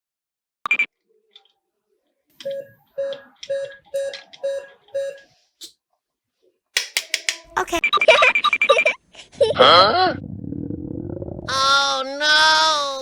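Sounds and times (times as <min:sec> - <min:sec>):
electronic beeps: 0:02.4 - 0:05.3
sharp click: 0:06.8 - 0:07.6.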